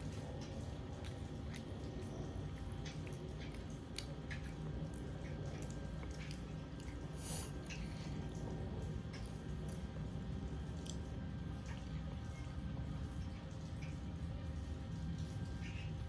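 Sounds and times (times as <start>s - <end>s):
child chewing: 0.0s - 10.0s
steady low hum: 0.0s - 16.0s.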